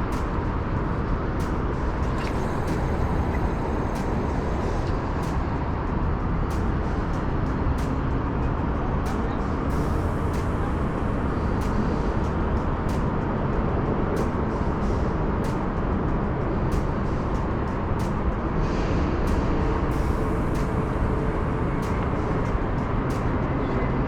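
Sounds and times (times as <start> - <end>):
rumble of traffic on bridge: 0.0 - 24.0.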